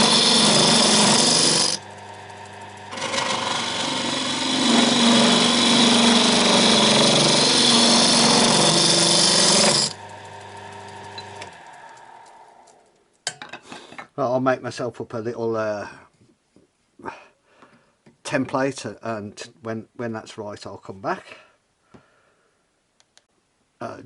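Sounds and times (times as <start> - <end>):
lathe motor hum: 0.0 - 12.9
turning tool cutting wood: 0.0 - 13.0.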